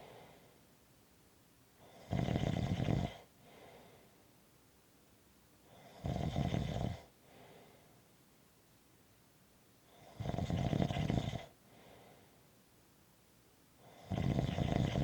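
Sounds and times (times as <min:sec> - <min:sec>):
faint breath: 0:00.0 - 0:00.7, 0:03.2 - 0:04.4, 0:07.2 - 0:08.1, 0:11.6 - 0:12.6
person snoring: 0:01.8 - 0:03.3, 0:05.8 - 0:07.1, 0:10.0 - 0:11.5, 0:13.9 - 0:15.0.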